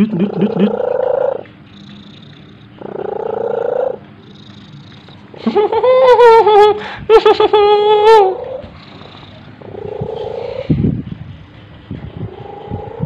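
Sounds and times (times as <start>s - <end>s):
cat purring: 0.0s - 5.5s, 8.4s - 13.0s.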